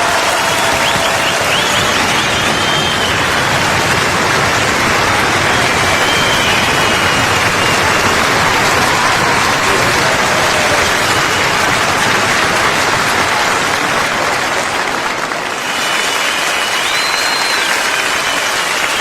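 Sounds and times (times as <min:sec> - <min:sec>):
crowd applauding: 0:00.0 - 0:19.0
faint whistle tones: 0:15.7 - 0:19.0.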